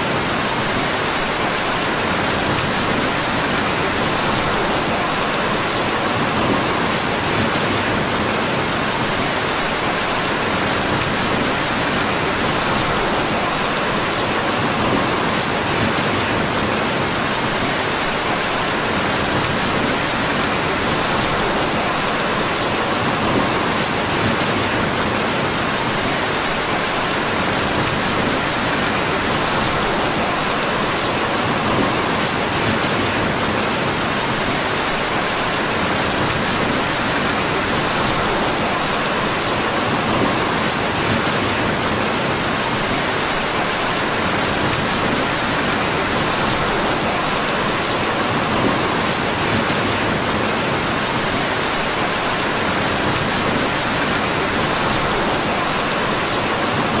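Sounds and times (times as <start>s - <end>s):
steady rainfall: 0.0s - 57.0s.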